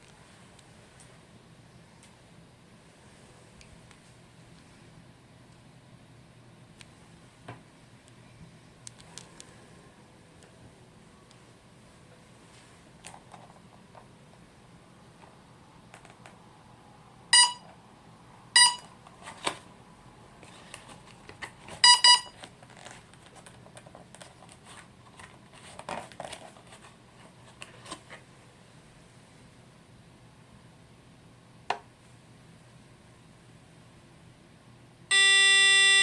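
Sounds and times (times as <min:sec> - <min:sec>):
short electronic beeps: 0:17.4 - 0:17.7, 0:18.6 - 0:18.9, 0:21.8 - 0:22.4, 0:35.1 - 0:36.0.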